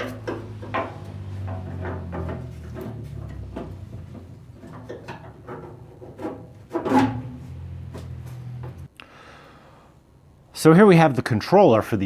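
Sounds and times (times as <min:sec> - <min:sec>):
loud metal clunk: 0:00.0 - 0:08.9
metal grill parts knocking: 0:00.0 - 0:08.9.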